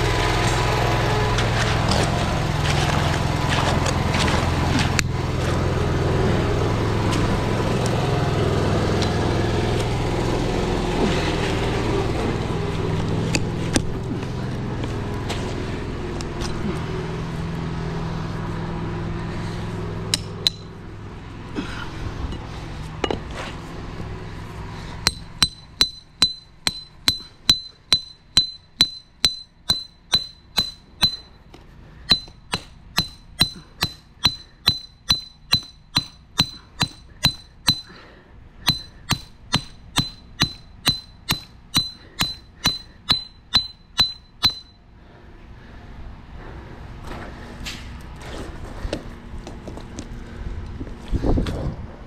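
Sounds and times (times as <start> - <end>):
engine running: 0.0 - 52.0
hammer strikes on metal: 20.1 - 20.8, 25.0 - 31.4, 32.1 - 44.8.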